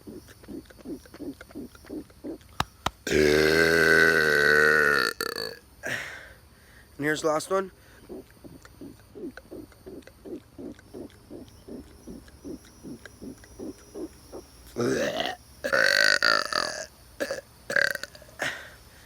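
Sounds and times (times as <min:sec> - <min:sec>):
man burping loudly: 0:03.0 - 0:06.2, 0:14.8 - 0:18.7
soft short pulses: 0:07.8 - 0:15.9.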